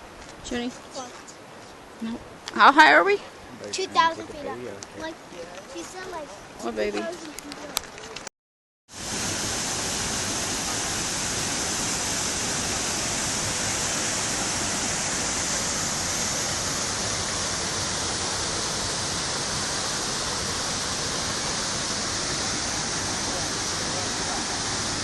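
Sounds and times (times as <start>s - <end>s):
waterfall rushing: 9.0s - 25.0s.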